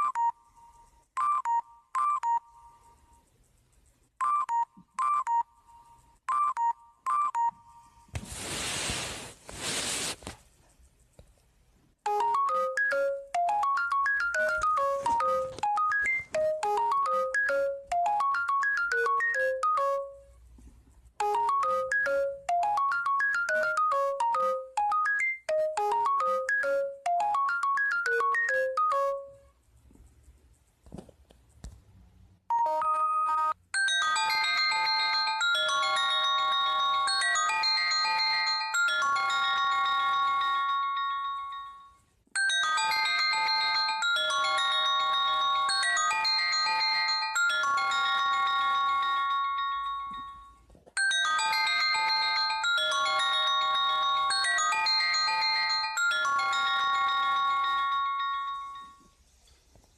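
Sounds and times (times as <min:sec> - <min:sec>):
phone melodic ringtone: 0:00.0 - 0:03.1, 0:04.2 - 0:08.1, 0:12.0 - 0:20.3, 0:21.2 - 0:29.5, 0:32.5 - 0:59.2
burst of hiss: 0:08.2 - 0:10.3
tone with stacked notes: 0:12.0 - 0:20.2, 0:21.2 - 0:29.4.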